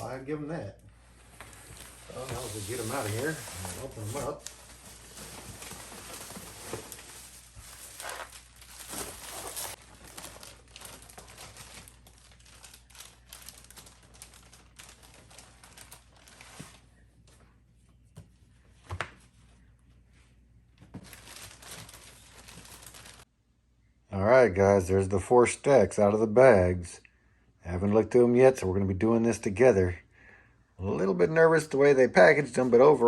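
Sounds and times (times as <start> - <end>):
bags rustling and crinkling: 1.1 - 16.9, 20.9 - 23.3.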